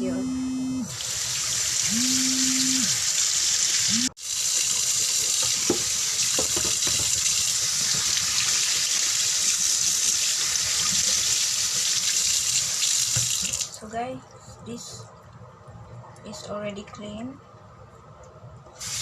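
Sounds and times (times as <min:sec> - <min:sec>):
tap running into sink: 0:05.2 - 0:08.9, 0:13.1 - 0:13.6.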